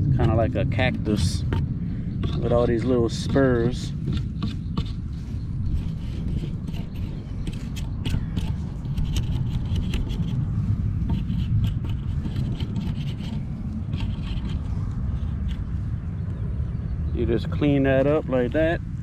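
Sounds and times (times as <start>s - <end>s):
steady low rumble: 0.0s - 19.0s
knife scraping a plant stem: 5.7s - 15.8s.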